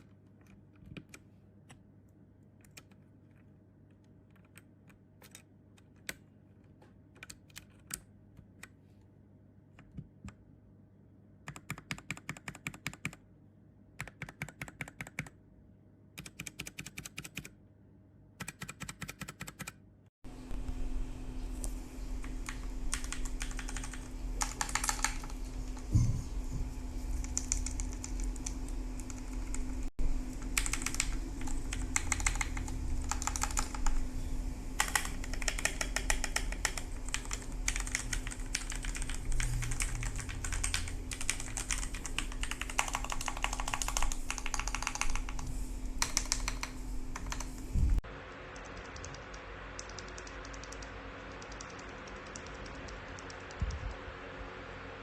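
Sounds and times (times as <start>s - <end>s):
typing on mechanical keyboard: 11.5s - 13.2s, 14.0s - 15.3s, 16.2s - 17.5s, 18.4s - 19.7s, 22.2s - 25.8s, 27.2s - 29.8s, 30.4s - 34.0s, 34.8s - 47.6s, 48.6s - 53.8s.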